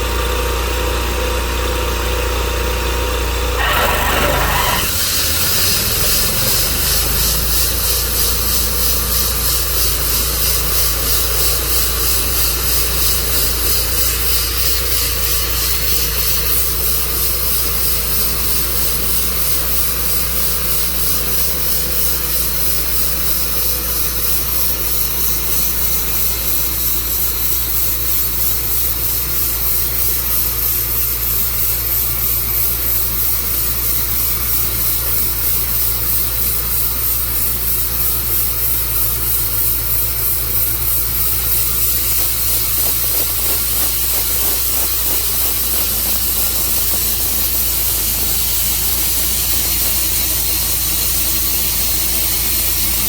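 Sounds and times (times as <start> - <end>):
engine running: 0.0 - 53.0
loud hiss: 3.6 - 23.6, 36.8 - 53.0.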